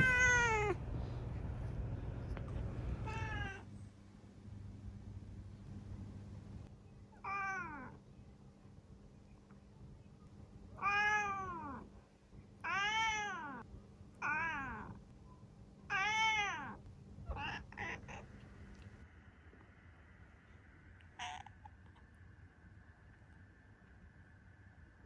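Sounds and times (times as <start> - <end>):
cat meowing: 0.0 - 0.8, 3.0 - 3.6, 7.2 - 8.0, 10.8 - 11.8, 12.6 - 13.6, 14.2 - 15.0, 15.9 - 18.3, 21.1 - 21.7.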